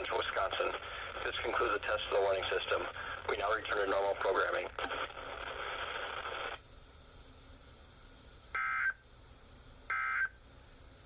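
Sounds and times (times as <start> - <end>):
radio broadcast hiss: 0.0 - 6.6.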